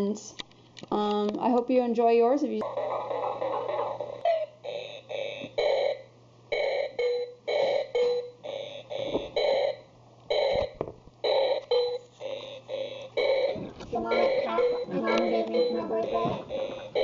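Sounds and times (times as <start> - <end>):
toy keyboard beeping notes: 6.6 - 17.0.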